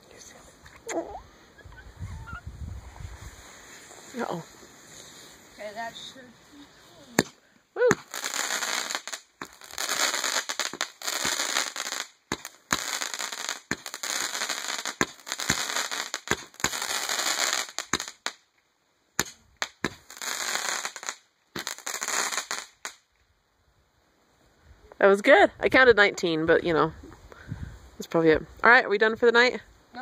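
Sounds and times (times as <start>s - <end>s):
fireworks popping and crackling: 2.8s - 6.3s, 7.0s - 18.5s, 19.2s - 23.1s.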